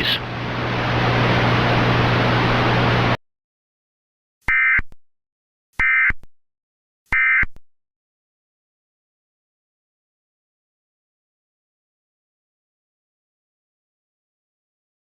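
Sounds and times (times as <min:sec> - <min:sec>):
static hiss with low hum: 0:00.0 - 0:03.2.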